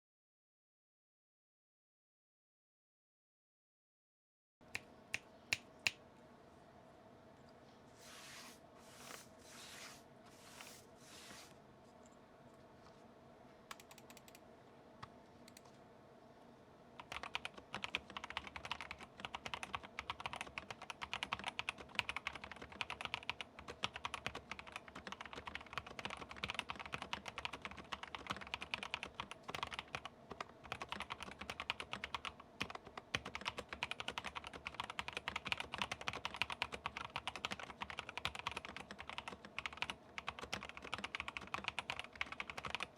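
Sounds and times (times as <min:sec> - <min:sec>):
mechanical keyboard typing: 0:13.7 - 0:14.4, 0:17.0 - 0:42.9.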